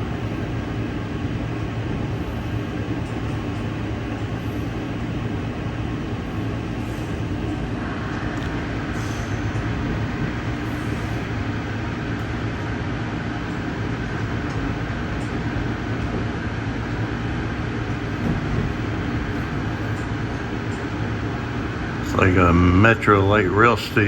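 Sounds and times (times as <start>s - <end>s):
train wheels rumbling on rail: 0.0s - 24.0s.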